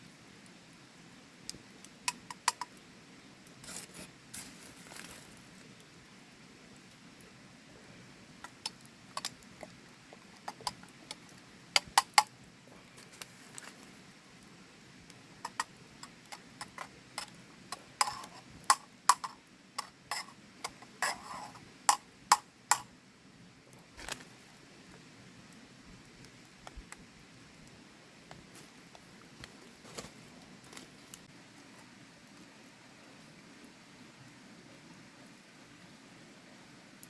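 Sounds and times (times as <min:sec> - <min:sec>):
clicks of small hard objects: 0:15.4 - 0:22.9.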